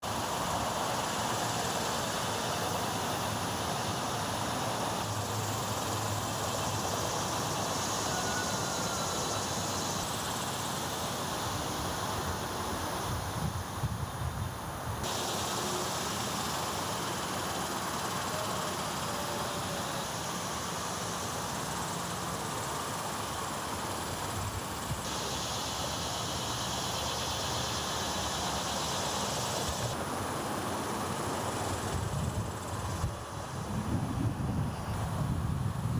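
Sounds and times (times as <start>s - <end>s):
insects hissing: 0.0s - 35.9s
distant traffic hum: 15.0s - 35.3s.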